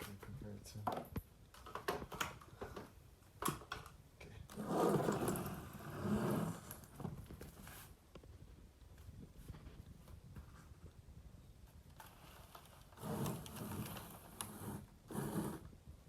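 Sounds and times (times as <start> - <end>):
rustling and scraping: 4.5 - 15.8.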